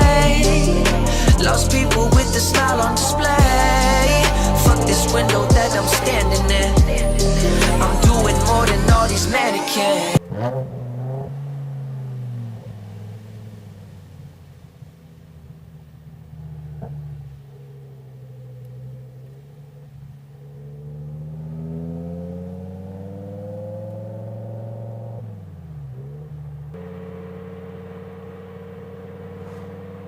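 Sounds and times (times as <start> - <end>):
car engine and exhaust revving: 0.0 - 30.0.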